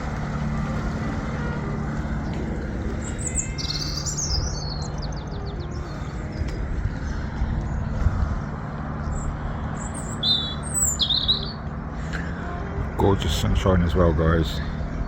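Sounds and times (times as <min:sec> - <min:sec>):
steady low rumble: 0:00.0 - 0:15.0
small birds chirping: 0:02.0 - 0:12.4.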